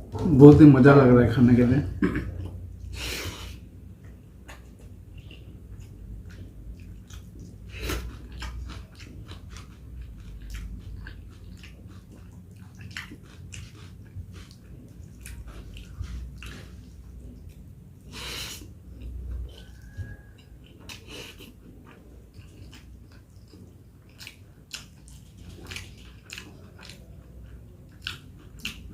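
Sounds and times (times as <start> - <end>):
person chewing wetly: 3.9 - 28.9.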